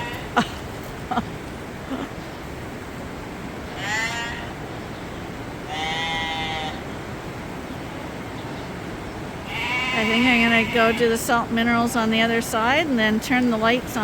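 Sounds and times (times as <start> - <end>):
lambs bleating: 3.8 - 4.6, 5.7 - 6.8, 9.4 - 11.2.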